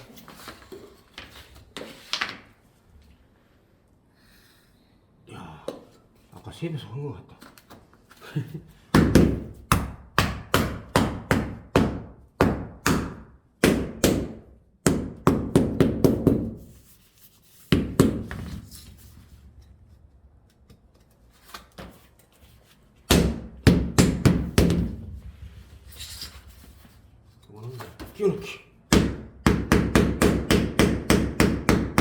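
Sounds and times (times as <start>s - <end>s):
hammer knocking floorboards: 14.9s - 16.6s, 17.7s - 18.8s, 23.1s - 25.3s.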